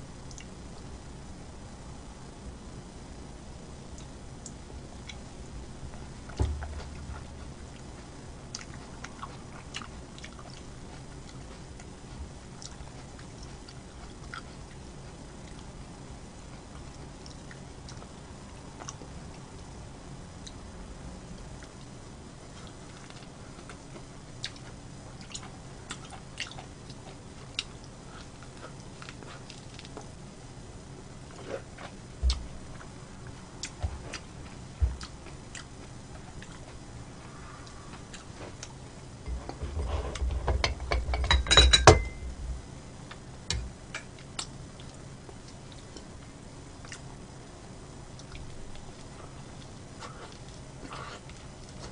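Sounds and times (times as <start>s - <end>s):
quiet chewing: 0.2s - 0.9s, 3.9s - 15.8s, 16.4s - 19.7s, 21.4s - 30.2s, 31.2s - 39.7s, 43.0s - 47.1s, 48.1s - 51.9s
soft thumps: 6.3s - 7.4s.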